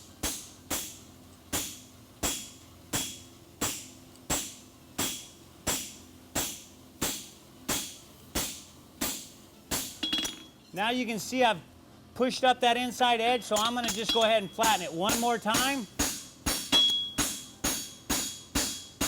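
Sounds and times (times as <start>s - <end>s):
hammer striking horseshoe on anvil: 0.2s - 10.6s, 13.5s - 19.0s.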